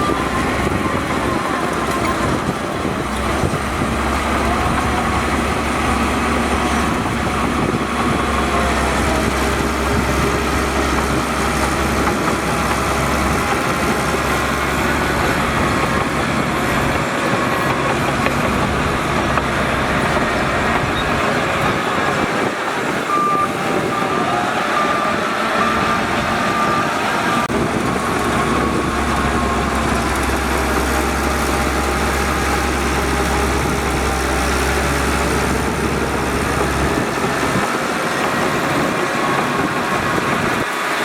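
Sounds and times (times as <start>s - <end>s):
heavy diesel machinery rumbling: 0.0s - 41.0s
reversing alarm beeping: 21.0s - 40.6s.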